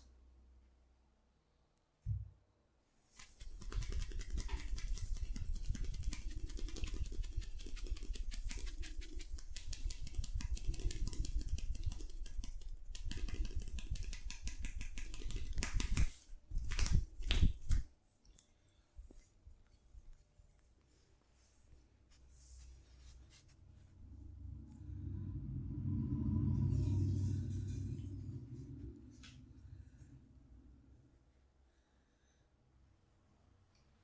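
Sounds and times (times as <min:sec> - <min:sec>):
hands tapping on head: 0:03.4 - 0:17.8.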